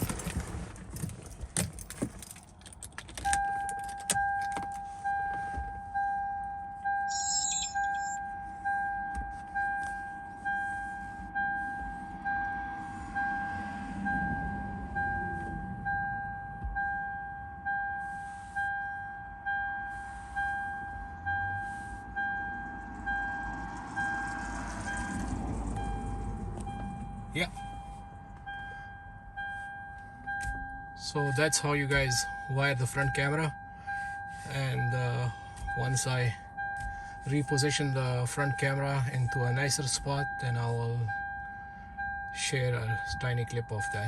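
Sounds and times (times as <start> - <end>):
keys rattling: 0.0 - 4.9, 7.1 - 8.2
two-tone dashboard warning chime: 3.2 - 44.0.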